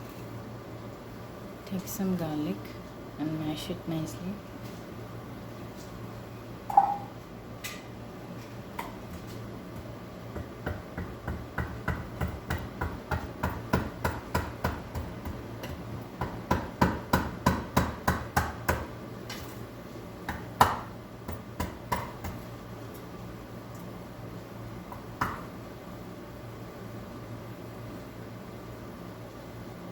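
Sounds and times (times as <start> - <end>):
garlic being pounded: 9.8 - 19.0, 20.2 - 22.5, 24.9 - 25.5.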